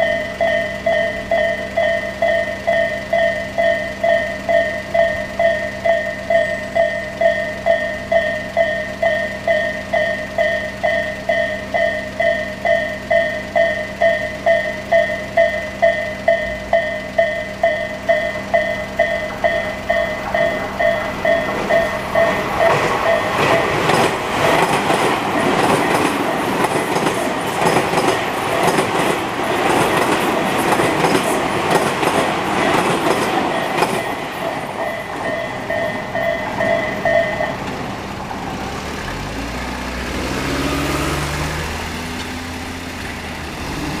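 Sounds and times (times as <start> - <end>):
train wheels clattering: 0.0 - 39.3
vehicle engine pulling away: 35.6 - 44.0.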